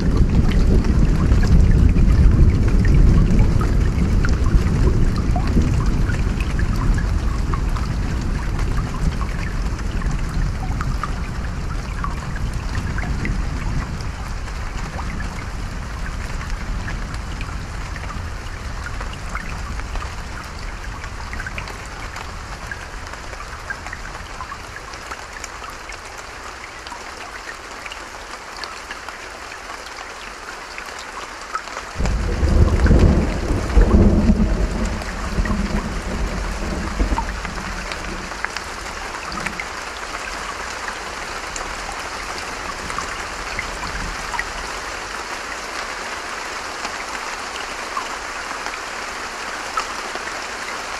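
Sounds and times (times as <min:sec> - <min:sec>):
thunder rumble: 0:00.0 - 0:22.7, 0:32.0 - 0:39.8
rain drops pattering: 0:00.0 - 0:50.9
stream running: 0:00.0 - 0:50.9.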